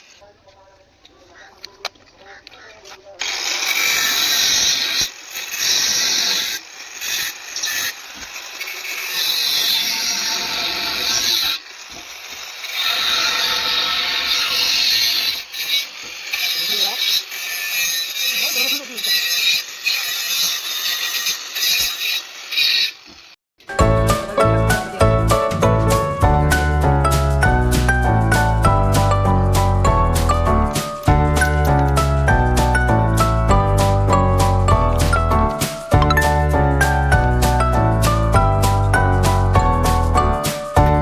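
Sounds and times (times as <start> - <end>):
power tool working on steel: 3.2 - 23.3.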